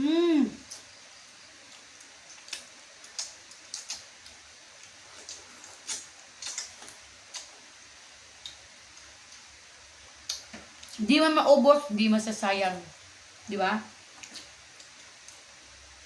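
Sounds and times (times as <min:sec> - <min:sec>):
wet chewing clicks and smacks: 0:01.7 - 0:07.6, 0:14.1 - 0:15.5.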